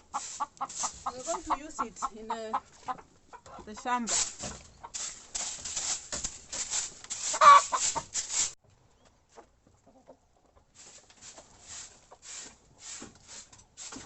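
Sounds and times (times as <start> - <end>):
chicken squawk: 0.0 - 2.7, 7.2 - 8.1
chickens clucking: 0.0 - 14.0
short scratchy noises: 4.1 - 8.6.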